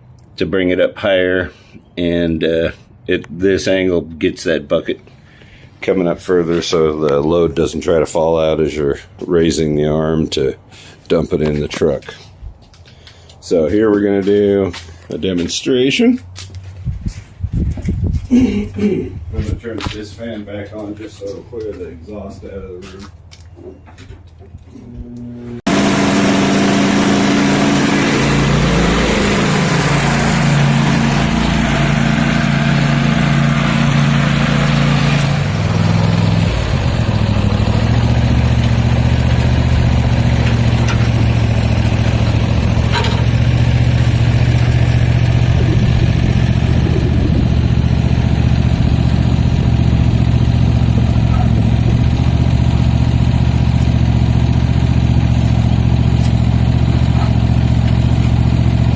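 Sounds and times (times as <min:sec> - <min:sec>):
mower engine running: 0:24.9 - 0:58.9.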